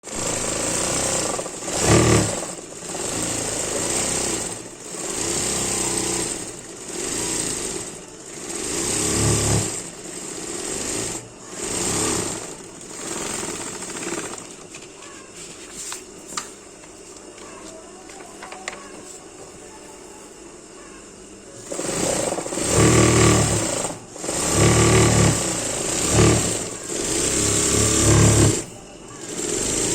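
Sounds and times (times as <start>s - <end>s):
sewing machine perforating paper: 0.0s - 15.1s, 21.6s - 29.9s.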